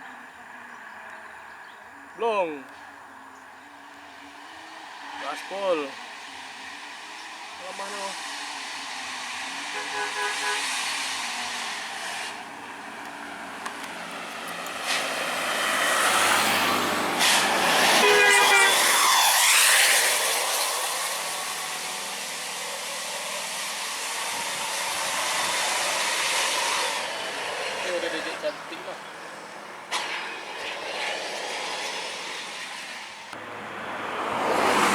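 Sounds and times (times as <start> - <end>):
large vehicle passing: 2.4 - 34.9
multi-tone air horn melody: 9.7 - 11.4, 17.9 - 19.1.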